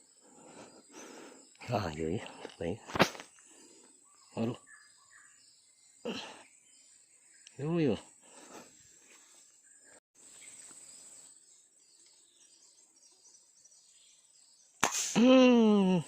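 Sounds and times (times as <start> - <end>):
insects buzzing: 0.0 - 16.0
man calling out: 15.2 - 16.0.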